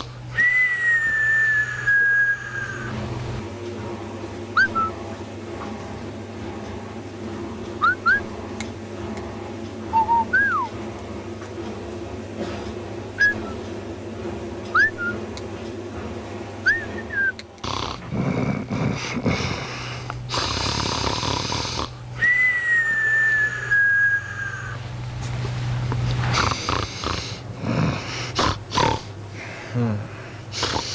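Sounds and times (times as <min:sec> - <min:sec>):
long falling whistle: 0:00.4 - 0:02.9, 0:22.2 - 0:24.8
cat snoring with whistle: 0:16.7 - 0:22.0, 0:26.3 - 0:29.1, 0:30.6 - 0:30.9.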